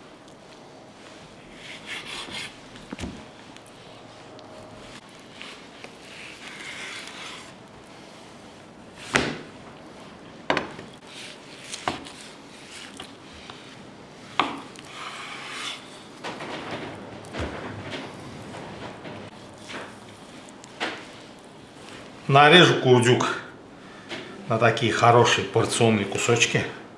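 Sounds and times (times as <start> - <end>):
knife scraping through fat: 1.4 - 3.0, 4.5 - 8.1, 11.0 - 16.1.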